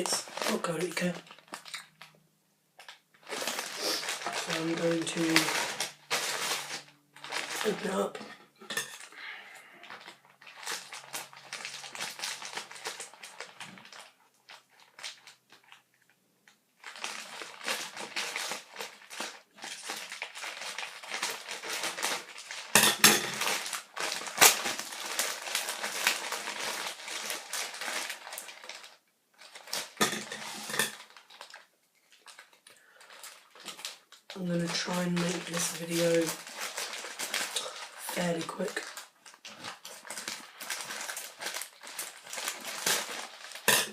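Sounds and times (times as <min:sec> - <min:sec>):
cardboard crunching and rustling: 0:03.2 - 0:08.1, 0:23.4 - 0:28.9, 0:38.8 - 0:43.7.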